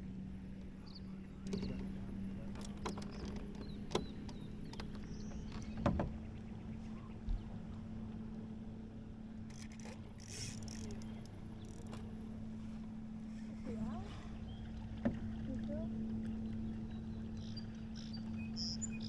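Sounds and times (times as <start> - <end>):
electric boat motor humming: 0.1 - 6.8, 7.6 - 19.0
knocks on boat: 1.5 - 6.3, 15.0 - 15.3.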